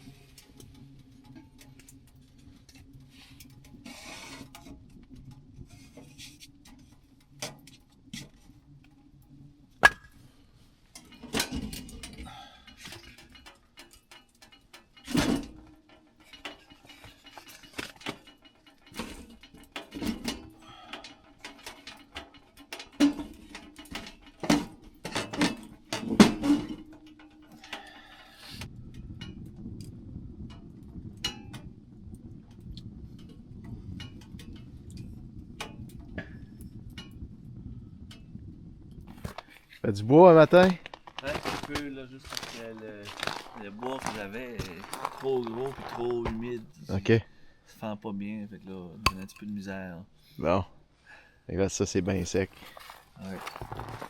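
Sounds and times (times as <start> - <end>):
sharp knocks and clinks: 49.0 - 49.5.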